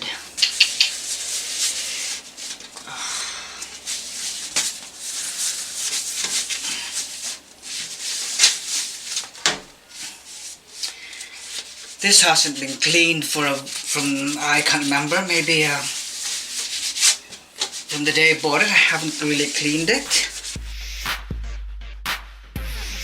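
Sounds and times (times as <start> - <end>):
hands rubbing computer parts: 0.0 - 2.9, 3.6 - 20.6
sharp clicks: 0.4 - 0.9.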